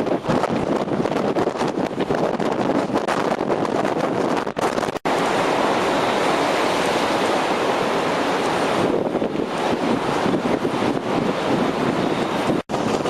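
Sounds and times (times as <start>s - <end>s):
wind buffeting microphone: 0.0s - 13.0s
surf breaking heavily: 4.5s - 13.0s.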